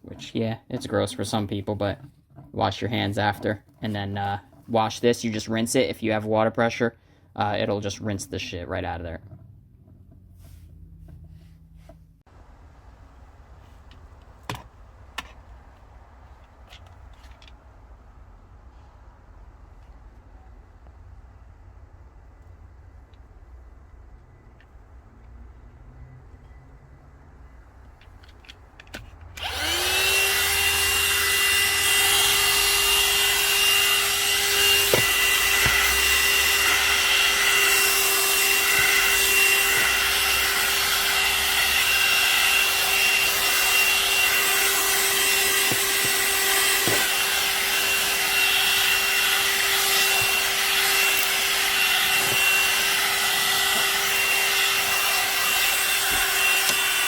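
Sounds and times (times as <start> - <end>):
small electric motor whining: 29.4 - 57.0.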